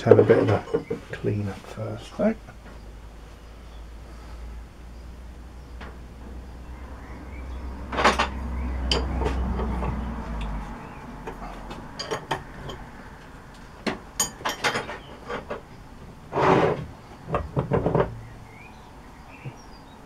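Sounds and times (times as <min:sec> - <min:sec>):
metal tools clinking: 0:07.9 - 0:10.0, 0:12.0 - 0:12.9, 0:14.2 - 0:15.6.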